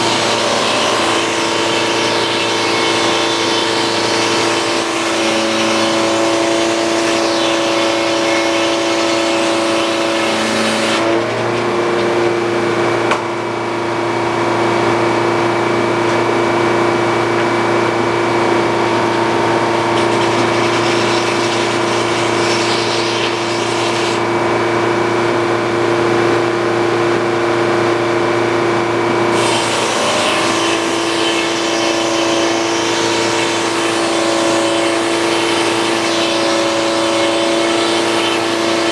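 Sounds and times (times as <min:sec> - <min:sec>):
sawmill engine humming: 0:00.0 - 0:12.8, 0:17.0 - 0:25.0, 0:28.8 - 0:38.9
bright sawing hiss: 0:29.4 - 0:38.9.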